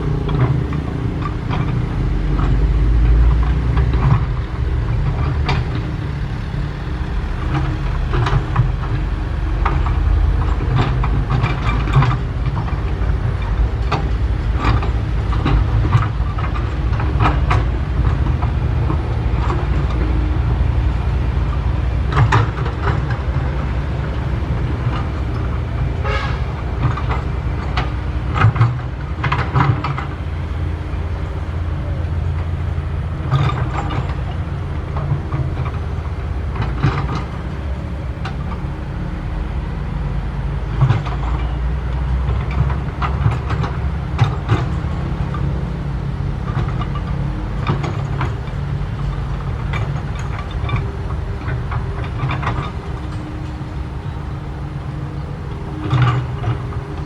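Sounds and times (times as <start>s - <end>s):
excavator diesel engine running: 0.0s - 57.0s
metal clanks from excavator bucket: 46.4s - 57.0s.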